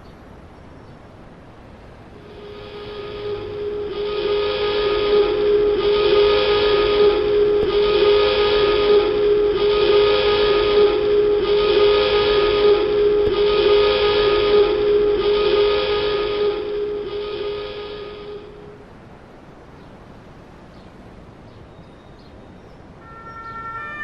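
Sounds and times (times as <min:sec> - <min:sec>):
submarine dive alarm horn: 0:02.2 - 0:18.8, 0:23.0 - 0:24.0.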